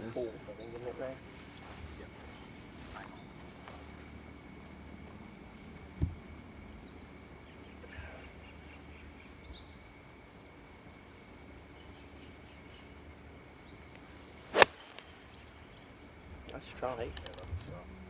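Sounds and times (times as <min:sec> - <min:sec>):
drone of insects: 0:00.0 - 0:18.0.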